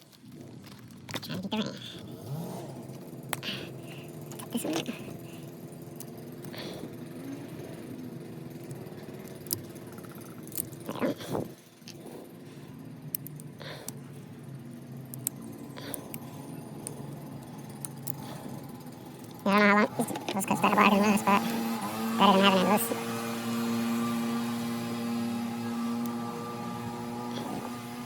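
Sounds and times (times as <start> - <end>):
low mechanical hum: 0.0 - 28.0
tools clicking and rattling: 7.7 - 12.0, 12.8 - 20.5.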